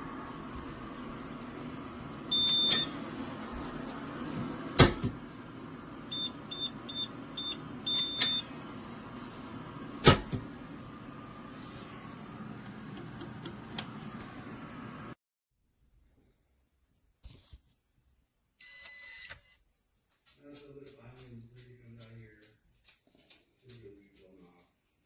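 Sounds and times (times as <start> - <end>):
steady hum: 0.0 - 15.2
keypad beeps: 2.3 - 3.0, 6.1 - 8.6, 18.6 - 19.6.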